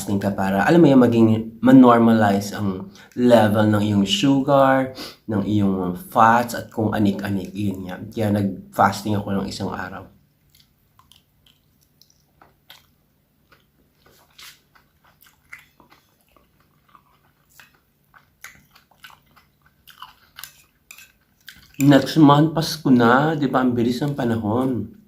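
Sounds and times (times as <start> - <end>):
person chewing food: 10.2 - 22.2.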